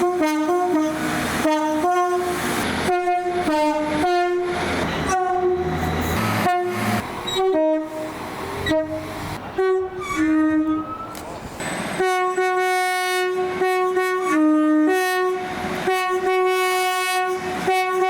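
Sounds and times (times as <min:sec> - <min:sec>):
train horn short blasts: 0:00.0 - 0:11.1, 0:12.0 - 0:18.0
train rumble: 0:00.0 - 0:18.0.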